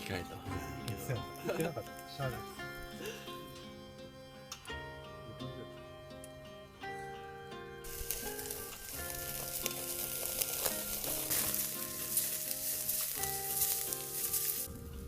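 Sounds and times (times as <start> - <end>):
soft background music: 0.0 - 15.0
food sizzling in a pan: 7.9 - 14.8.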